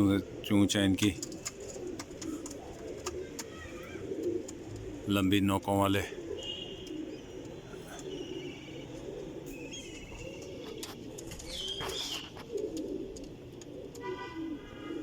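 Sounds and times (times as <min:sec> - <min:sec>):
pigeons cooing: 0:00.0 - 0:15.0
high-pitched bird chirps and trills: 0:09.5 - 0:10.5.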